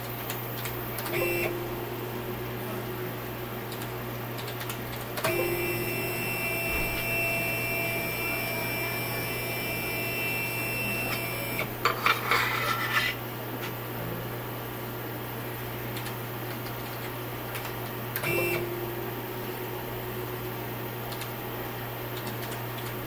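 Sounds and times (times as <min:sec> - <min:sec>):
steady low hum: 0:00.0 - 0:16.4, 0:17.3 - 0:23.0
stepper motor whining: 0:05.3 - 0:11.7.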